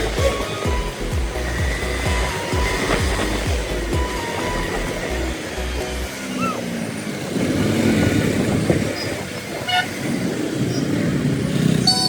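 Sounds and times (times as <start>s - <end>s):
road traffic noise: 0.0s - 12.0s
vehicle horn honk: 9.6s - 10.0s.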